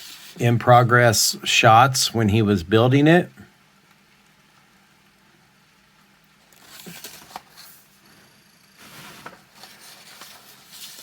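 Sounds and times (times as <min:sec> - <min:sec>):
paper rustling: 0:06.5 - 0:07.9, 0:08.8 - 0:11.0.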